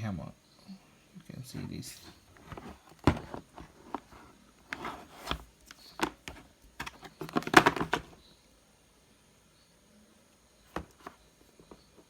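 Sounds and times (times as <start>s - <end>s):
drill handling clicks and knocks: 2.4s - 8.2s.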